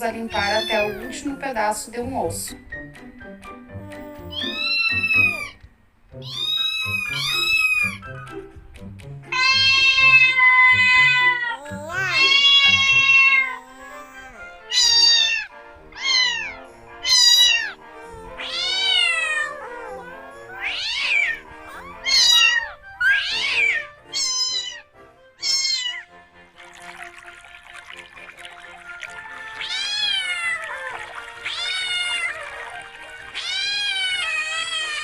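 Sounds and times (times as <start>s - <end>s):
background music: 0.0s - 35.0s
cat meowing: 0.3s - 1.2s, 3.8s - 5.6s, 6.2s - 8.0s, 9.3s - 26.1s, 29.0s - 35.0s.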